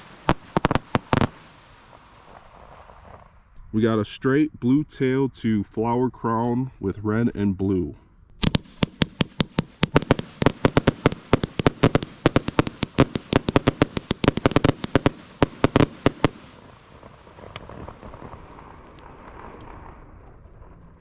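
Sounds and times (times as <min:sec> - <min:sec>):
firework cake bangs: 0:00.0 - 0:03.2, 0:08.4 - 0:18.8
faint steady hiss: 0:00.0 - 0:21.0.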